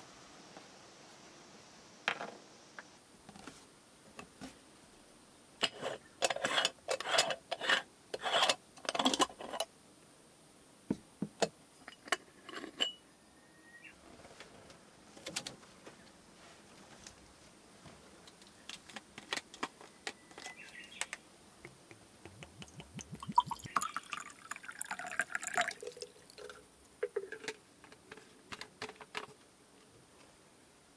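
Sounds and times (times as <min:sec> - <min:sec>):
objects rustling and knocking: 0:27.0 - 0:29.5.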